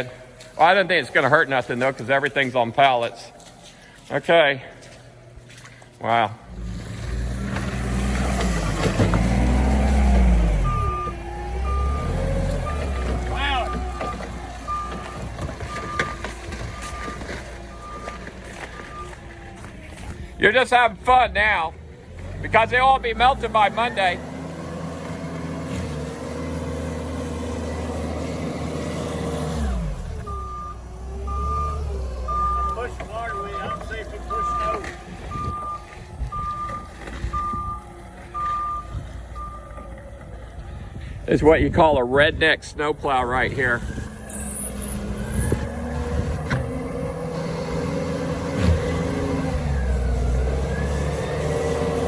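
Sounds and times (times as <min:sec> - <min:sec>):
forklift engine revving: 0:06.2 - 0:42.3, 0:43.0 - 0:52.0
reversing alarm beeping: 0:09.3 - 0:21.8, 0:29.7 - 0:40.1.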